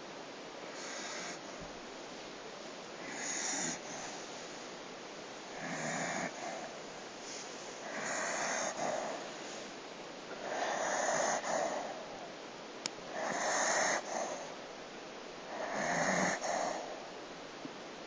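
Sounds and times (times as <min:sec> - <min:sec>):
dog snoring: 0:00.7 - 0:01.6, 0:03.0 - 0:04.2, 0:05.5 - 0:06.8, 0:07.8 - 0:09.4, 0:10.3 - 0:12.1, 0:13.1 - 0:14.6, 0:15.5 - 0:17.0.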